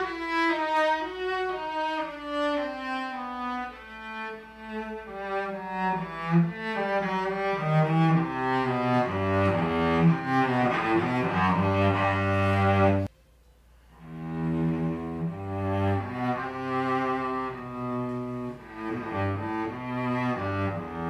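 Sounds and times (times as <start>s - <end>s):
solo cello playing: 0.0s - 13.1s, 13.9s - 21.0s.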